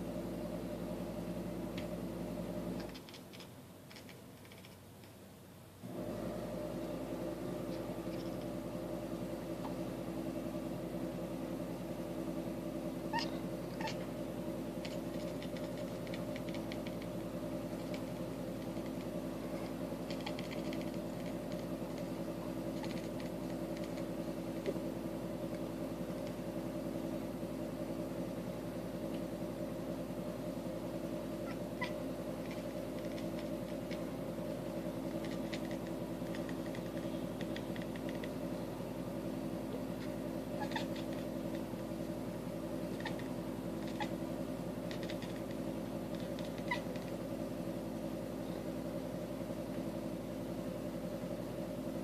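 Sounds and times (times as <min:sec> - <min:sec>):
steady low hum: 0:00.0 - 0:52.0
rapid faint clicks: 0:02.8 - 0:05.2, 0:14.8 - 0:26.5, 0:31.4 - 0:38.5, 0:39.8 - 0:42.2, 0:42.8 - 0:47.3
cat chirping: 0:13.1 - 0:14.2, 0:14.8 - 0:24.1, 0:31.4 - 0:34.2, 0:35.1 - 0:38.4, 0:39.8 - 0:41.8, 0:42.8 - 0:44.2, 0:44.9 - 0:47.2.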